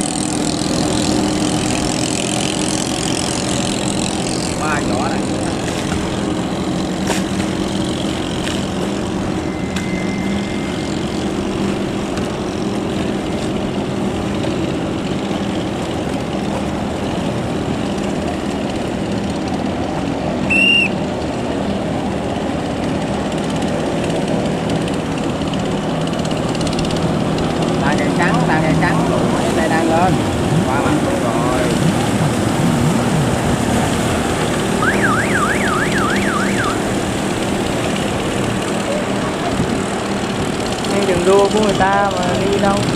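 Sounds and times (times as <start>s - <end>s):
boat engines droning: 0.0s - 42.9s
high-pitched whistle: 9.4s - 11.1s, 20.5s - 21.0s, 34.8s - 36.8s.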